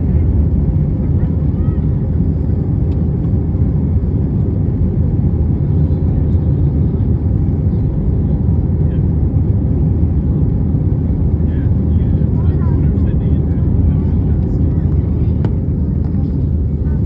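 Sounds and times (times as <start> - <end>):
air rushing in cabin: 0.0 - 17.0
jet engines rumbling: 0.0 - 17.0.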